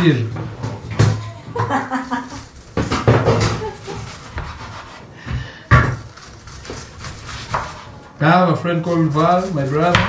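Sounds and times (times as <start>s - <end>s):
people talking: 0.0s - 0.3s, 8.2s - 10.0s.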